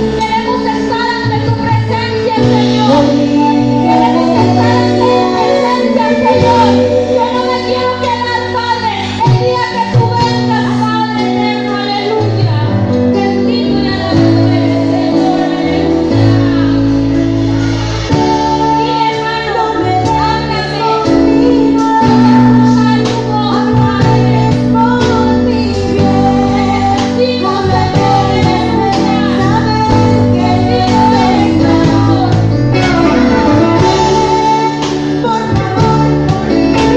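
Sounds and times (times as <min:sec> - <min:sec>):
bass line: 0:00.0 - 0:36.9
high voice singing: 0:02.4 - 0:08.5
sustained instrument chords: 0:02.9 - 0:08.3.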